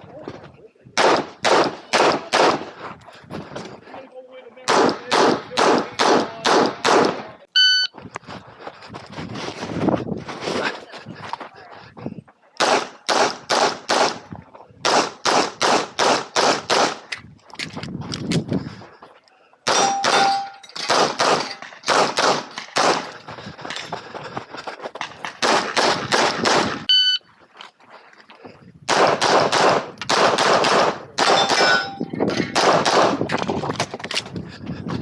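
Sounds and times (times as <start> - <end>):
pistol shots: 1.0 - 2.7, 4.7 - 7.3, 12.6 - 17.0, 19.7 - 23.2, 25.4 - 26.9, 28.9 - 33.2
brief beep: 7.5 - 8.0, 26.9 - 27.3.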